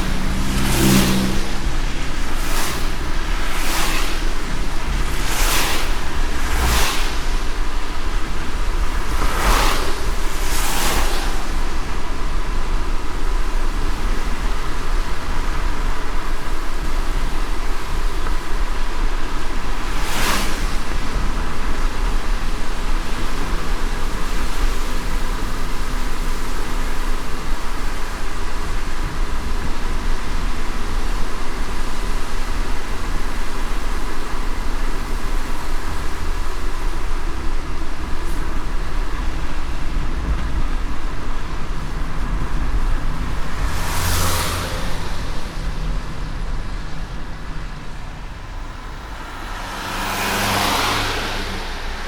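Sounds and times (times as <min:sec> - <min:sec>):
low road rumble: 0:00.0 - 0:52.0
passing vehicle whooshes: 0:00.0 - 0:52.0
rain and tyre spray hiss: 0:00.0 - 0:52.0.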